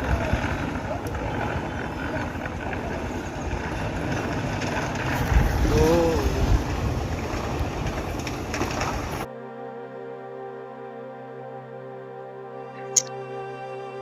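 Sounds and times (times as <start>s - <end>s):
wind buffeting microphone: 0.0s - 9.3s.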